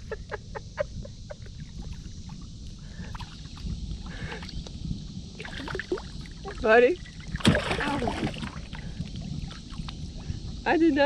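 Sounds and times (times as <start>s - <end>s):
steady low rumble: 0.0s - 11.0s
fish splashing in water: 5.4s - 10.0s.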